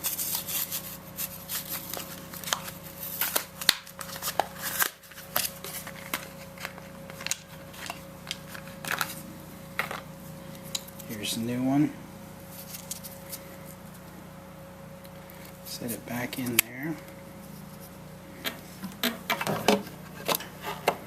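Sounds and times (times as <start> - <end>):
faint steady hum: 0.0 - 21.0
packaging crinkling and clicking: 1.5 - 9.2.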